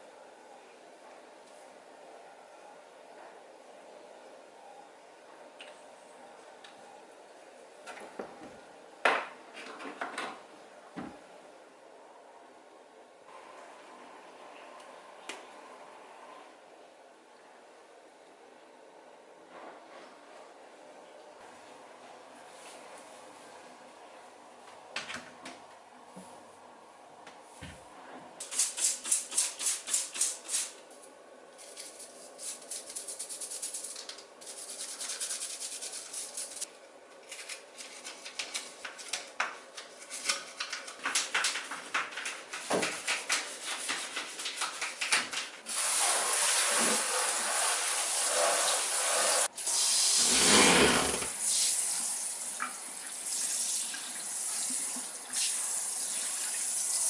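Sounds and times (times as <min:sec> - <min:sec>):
water tap running into sink: 0:51.3 - 0:57.0.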